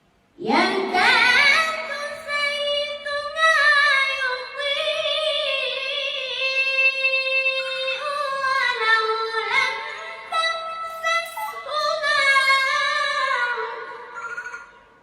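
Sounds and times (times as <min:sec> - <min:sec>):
person reciting melodically: 0:00.4 - 0:15.0.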